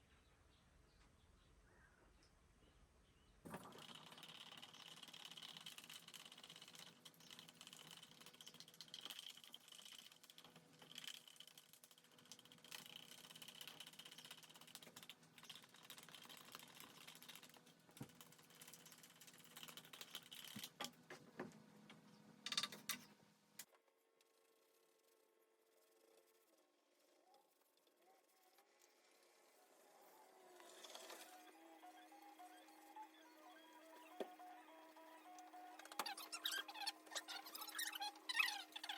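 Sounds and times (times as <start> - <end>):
small clicks and scrapes: 3.5 - 29.6, 30.5 - 31.5, 35.4 - 38.9.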